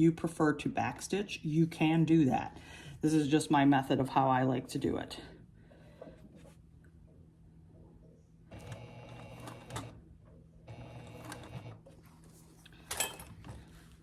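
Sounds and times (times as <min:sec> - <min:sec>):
sewing machine stitching: 0:08.5 - 0:10.0, 0:10.7 - 0:11.9.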